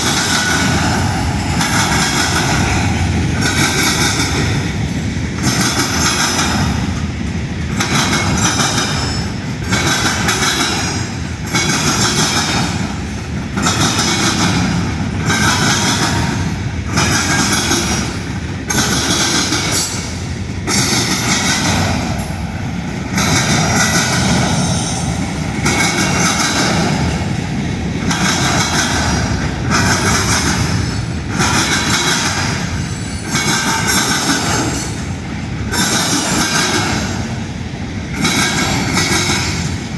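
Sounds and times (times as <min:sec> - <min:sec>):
train wheels clattering over rails: 0:00.0 - 0:39.9.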